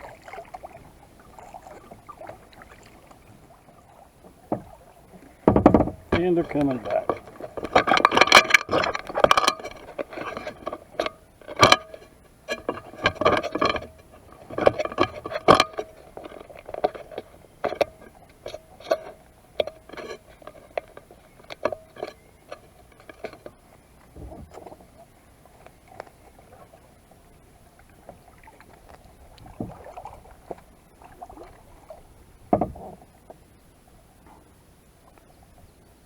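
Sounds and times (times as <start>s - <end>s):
water patter from paddle strokes: 0.0s - 34.4s
paddle knocking plastic hull: 0.4s - 22.3s, 28.1s - 33.4s.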